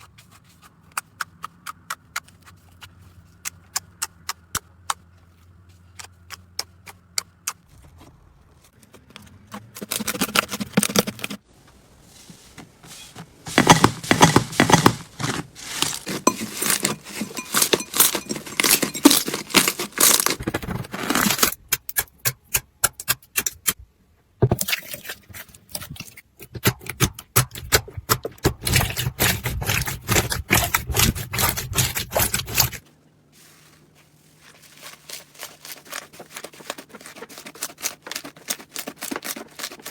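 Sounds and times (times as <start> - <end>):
slime squeezed crackling: 13.6 - 20.4.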